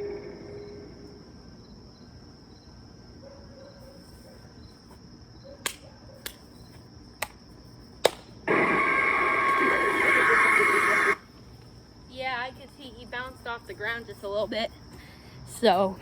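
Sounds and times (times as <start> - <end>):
steady high tone: 0.0 - 1.3.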